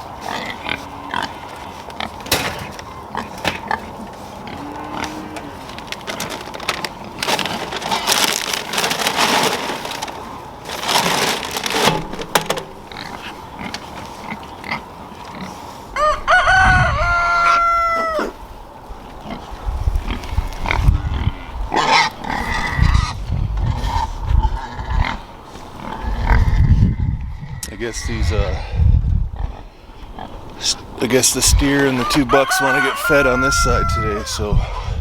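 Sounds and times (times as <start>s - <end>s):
rustling scraping noise: 1.4s - 15.9s
rooster crowing: 15.9s - 18.4s, 31.8s - 34.6s.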